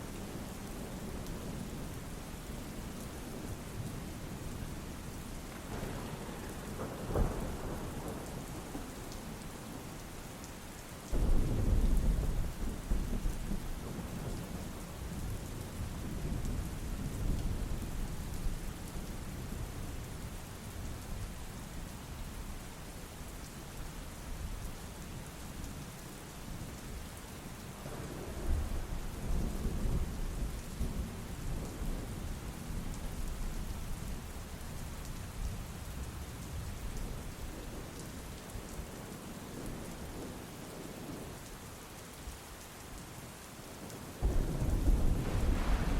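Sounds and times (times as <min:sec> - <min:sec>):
thunder rumbling: 0:05.5 - 0:08.9, 0:11.1 - 0:15.2, 0:44.2 - 0:45.9
rain hissing: 0:43.7 - 0:45.9.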